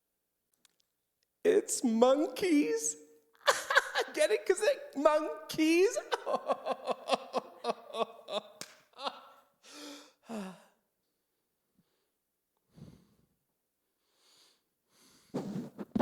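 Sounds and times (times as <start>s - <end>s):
person laughing: 3.4s - 9.4s
breathy sigh: 9.6s - 10.8s.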